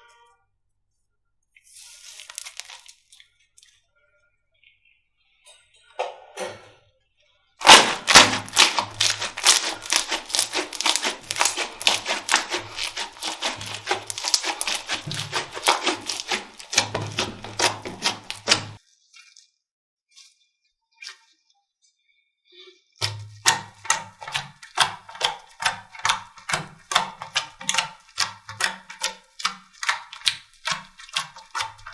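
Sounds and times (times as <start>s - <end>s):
slime clicking and popping: 2.1s - 3.0s, 7.6s - 18.8s, 23.0s - 31.9s.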